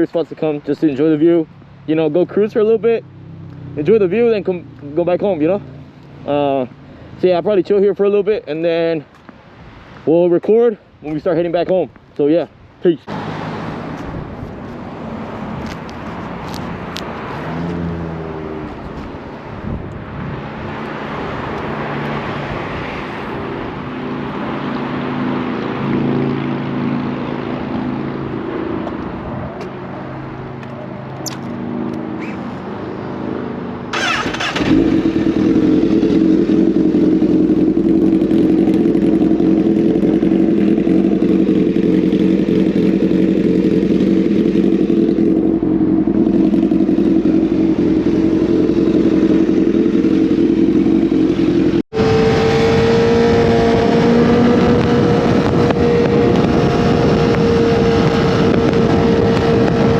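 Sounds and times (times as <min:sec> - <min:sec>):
wind rushing over microphone: 0:13.5 - 0:31.0, 0:43.8 - 0:59.9
motorcycle engine revving: 0:33.2 - 0:59.9.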